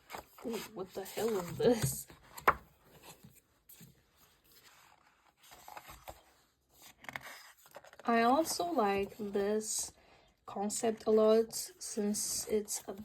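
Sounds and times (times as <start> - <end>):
paper rustling and scraping: 0.0 - 8.1.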